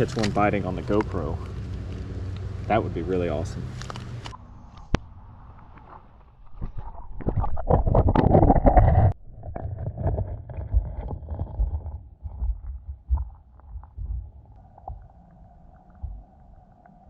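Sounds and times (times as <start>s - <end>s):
muffled underwater rumble: 4.2s - 17.0s
water splashing against camera: 5.6s - 16.7s.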